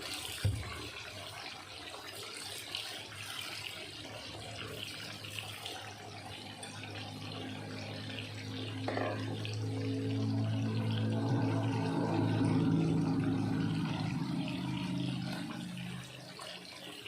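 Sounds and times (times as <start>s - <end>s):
low hum: 6.7s - 16.5s.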